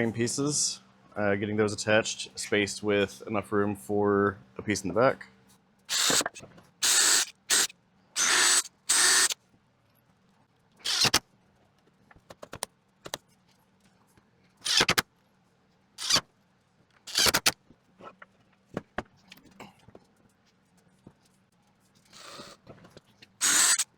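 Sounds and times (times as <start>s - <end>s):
power fastening tool bursts: 5.9s - 9.4s, 10.9s - 11.2s, 14.6s - 15.0s, 16.0s - 16.2s, 17.1s - 17.6s, 22.2s - 22.6s, 23.4s - 23.9s.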